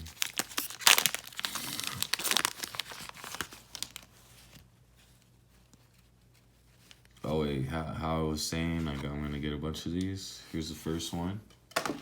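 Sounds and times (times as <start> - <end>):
wrapper tearing and crinkling: 0.0 - 4.5.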